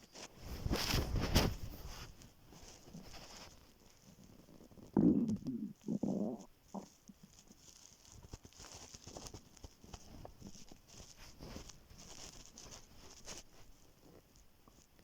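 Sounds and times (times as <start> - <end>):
faint small crackles: 0.0 - 15.0
stomach growling: 4.1 - 7.4.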